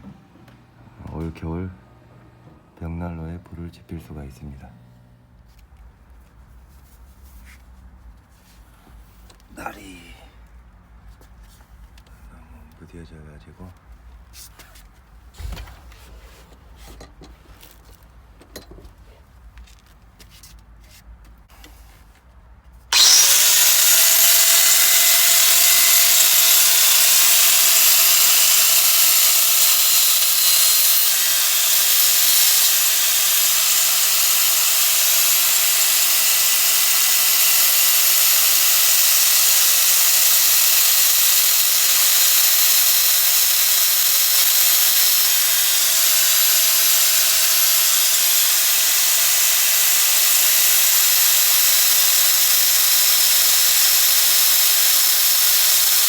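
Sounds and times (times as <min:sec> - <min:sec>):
electric grinder whining: 0:22.9 - 0:56.0.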